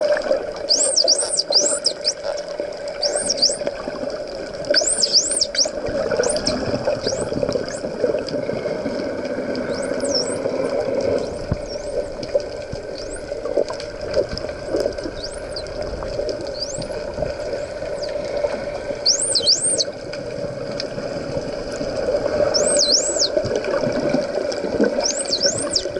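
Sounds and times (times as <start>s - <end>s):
underwater hiss and hum: 0.0s - 25.9s
dolphins whistling underwater: 0.6s - 3.8s, 4.6s - 8.0s, 9.6s - 12.2s, 12.8s - 13.6s, 14.6s - 20.0s, 22.3s - 23.4s, 24.8s - 25.9s.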